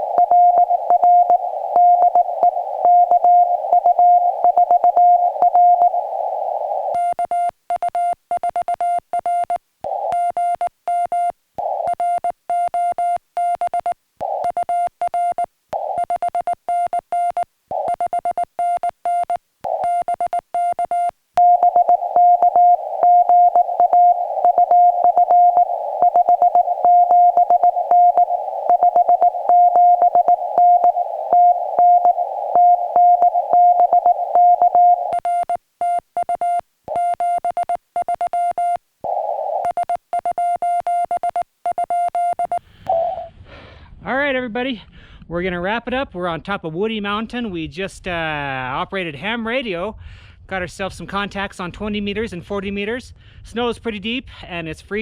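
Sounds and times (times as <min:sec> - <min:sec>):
morse code tone: 0:00.0 - 0:43.3.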